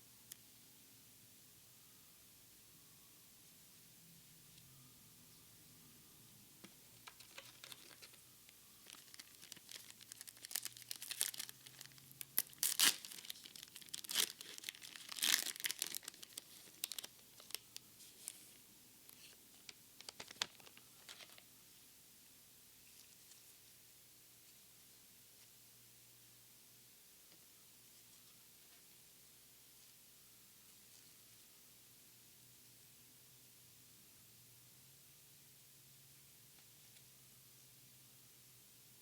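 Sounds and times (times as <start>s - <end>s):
foil wrapper tearing and crinkling: 7.1s - 8.2s, 8.8s - 17.7s, 20.0s - 21.4s.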